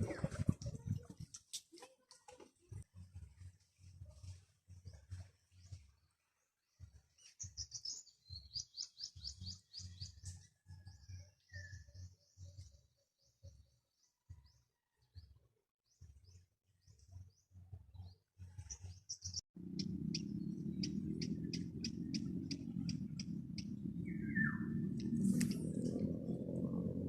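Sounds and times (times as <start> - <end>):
nestling birds cheeping: 19.0 - 26.9
steady low rumble: 19.6 - 27.0
regular ticks: 19.7 - 23.9, 24.9 - 26.7.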